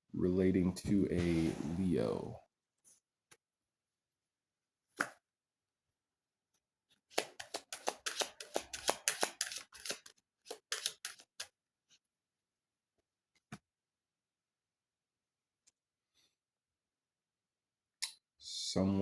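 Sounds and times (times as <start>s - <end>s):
cards shuffling and clicking: 7.1s - 11.6s.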